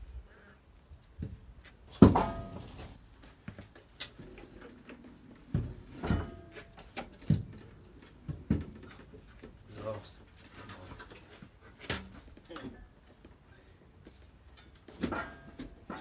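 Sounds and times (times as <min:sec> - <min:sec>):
metal clanks and knocks: 0:01.9 - 0:03.0.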